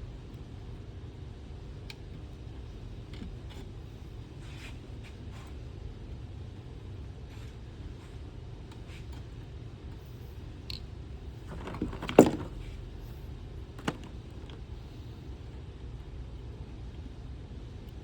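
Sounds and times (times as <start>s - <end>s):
steady low hum: 0.0s - 18.0s
clatter of tools and parts: 11.4s - 12.8s, 13.8s - 14.6s.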